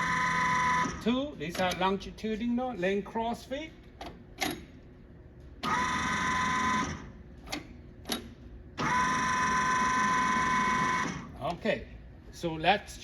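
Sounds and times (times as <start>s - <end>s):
lathe motor whine: 0.0s - 1.1s, 5.6s - 7.1s, 8.8s - 11.4s.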